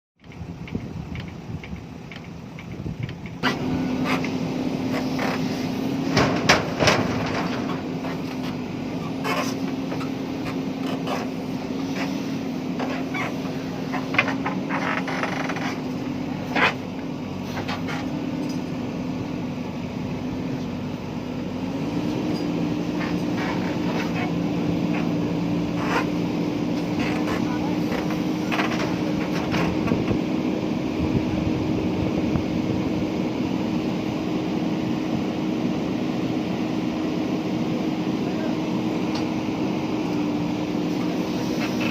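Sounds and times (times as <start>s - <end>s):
diesel engine running: 0.2s - 41.9s
clanks and knocks from digging: 6.1s - 8.6s.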